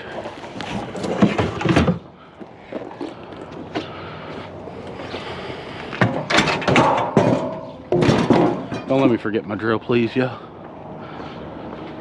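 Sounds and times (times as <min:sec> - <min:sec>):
knocks and clatter of items: 0:00.7 - 0:02.1, 0:06.0 - 0:09.1.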